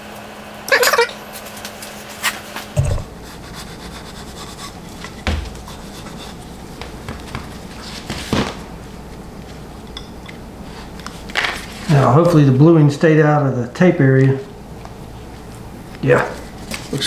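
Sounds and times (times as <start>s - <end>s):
low steady hum: 2.7s - 17.0s
scattered knocks: 2.8s - 3.1s.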